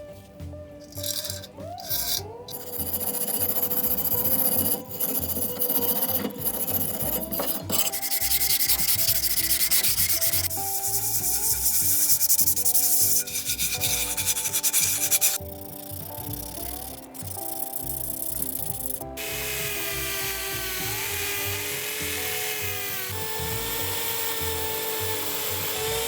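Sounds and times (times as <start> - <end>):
sanding scratchy rubbing: 1.0 - 20.2.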